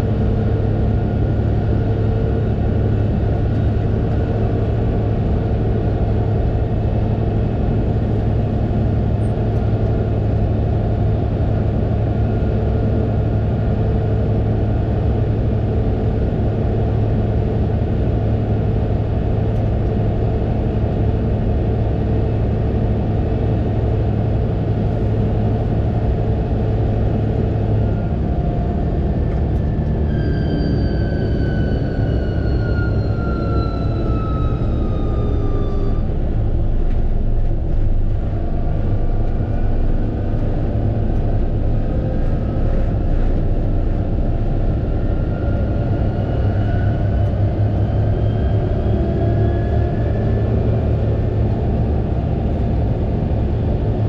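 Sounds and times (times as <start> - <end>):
tractor diesel engine droning: 0.0 - 54.0.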